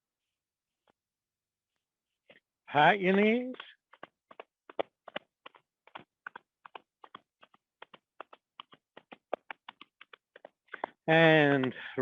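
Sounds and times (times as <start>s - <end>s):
hands patting knees: 3.1s - 12.0s.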